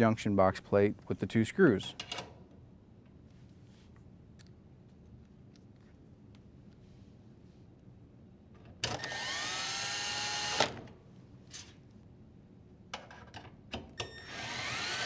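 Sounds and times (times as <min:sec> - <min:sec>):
drill driver whining: 0:08.9 - 0:10.8, 0:14.1 - 0:15.0.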